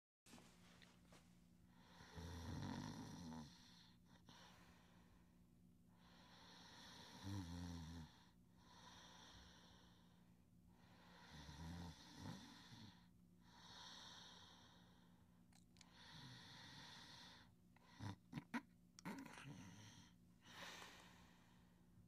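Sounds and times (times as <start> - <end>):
girl snoring softly: 1.8 - 4.6, 6.0 - 10.2, 10.8 - 15.0, 15.8 - 21.3.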